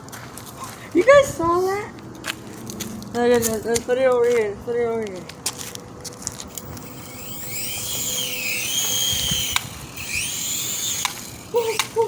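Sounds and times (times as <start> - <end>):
sharp tick: 6.5 - 12.0
toy drone motors whining: 6.5 - 12.0.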